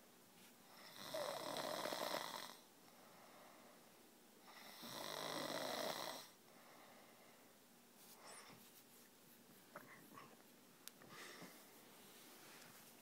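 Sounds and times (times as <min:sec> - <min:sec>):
man snoring: 0:00.7 - 0:02.6, 0:04.5 - 0:06.4.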